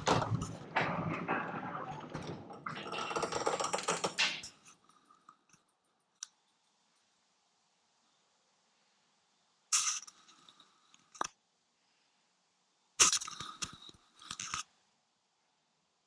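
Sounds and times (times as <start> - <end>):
rapid clicking and clattering: 0.0 - 4.6.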